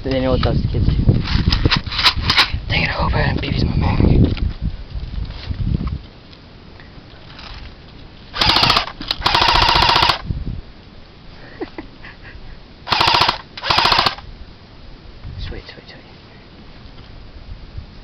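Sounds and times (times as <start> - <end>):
airsoft gun full auto bursts: 8.4 - 10.2, 12.9 - 14.2.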